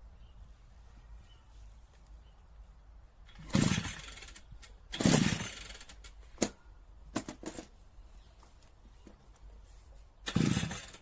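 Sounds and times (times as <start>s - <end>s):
engine turning over briefly: 10.2s - 11.0s.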